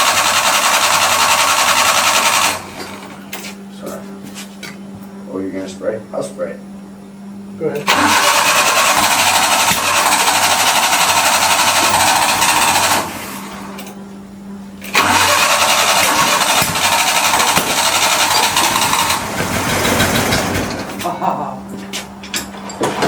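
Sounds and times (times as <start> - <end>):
engine cranked by starter: 0.0 - 3.2, 7.8 - 14.0, 14.8 - 21.1.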